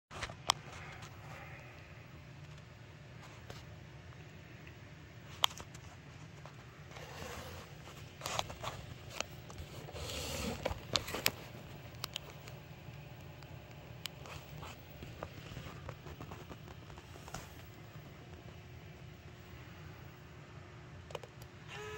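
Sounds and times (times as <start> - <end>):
steady low hum: 0.1 - 21.9
rustling and scraping: 5.2 - 12.6, 14.1 - 18.6.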